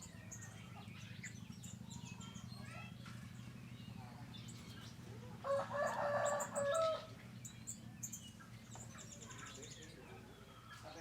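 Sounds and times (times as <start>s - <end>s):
small birds chirping: 0.0s - 11.0s
rooster crowing: 5.5s - 7.1s.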